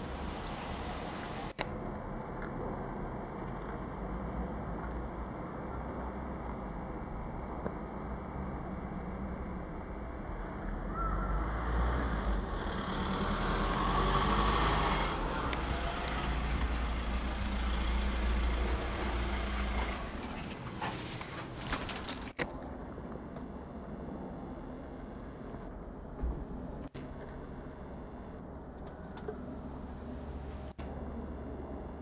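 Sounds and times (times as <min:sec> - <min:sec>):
propeller aircraft engine droning: 0:00.0 - 0:21.6.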